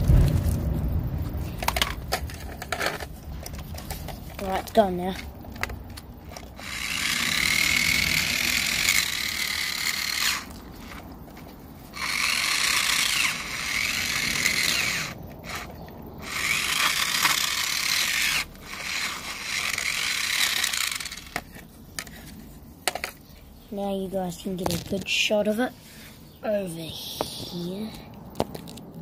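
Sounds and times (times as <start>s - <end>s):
drivetrain and wheels hissing: 0.0s - 28.1s
toy car electric motor whining: 3.8s - 11.0s, 11.8s - 22.3s.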